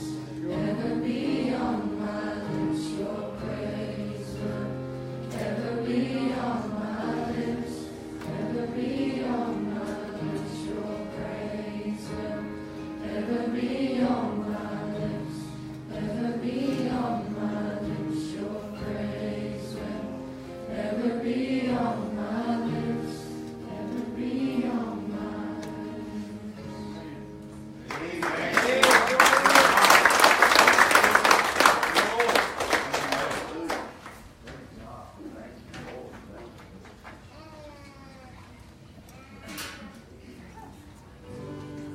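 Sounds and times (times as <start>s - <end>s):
group singing worship song: 0.0s - 29.0s.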